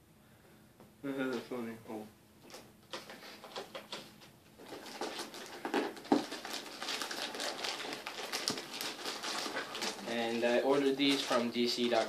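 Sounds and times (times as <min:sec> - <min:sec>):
plastic wrap rustling and crackling: 0:02.9 - 0:12.0
plastic wrap snapping: 0:04.6 - 0:12.0.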